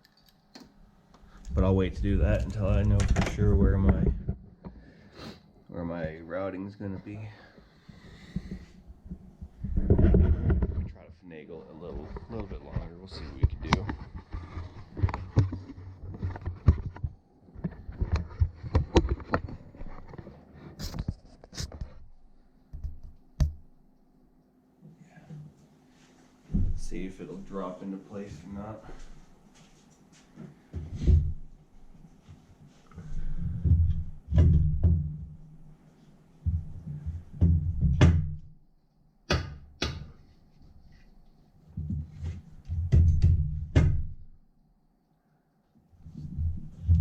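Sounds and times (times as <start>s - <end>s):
dull metal thunks and scrapes: 8.3s - 11.0s.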